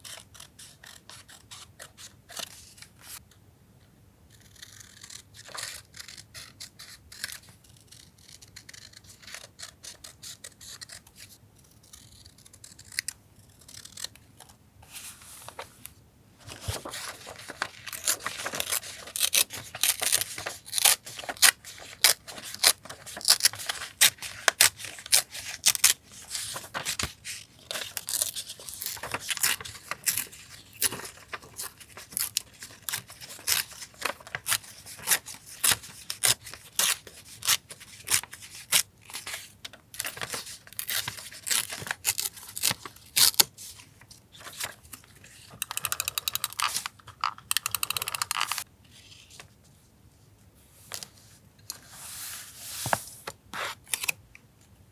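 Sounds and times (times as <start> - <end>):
scissors snipping paper: 4.4 - 14.2, 16.7 - 43.5, 45.6 - 48.6
paper rustling: 16.4 - 25.5, 26.2 - 38.5.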